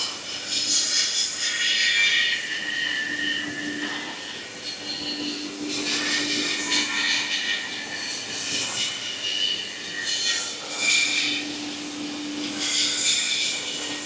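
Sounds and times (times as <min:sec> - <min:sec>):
steady machine hum: 0:02.4 - 0:14.0.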